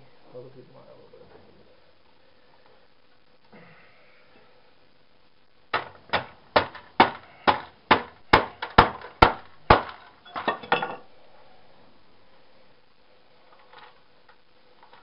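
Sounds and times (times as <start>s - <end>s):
rattle of small knocks: 5.7s - 11.1s.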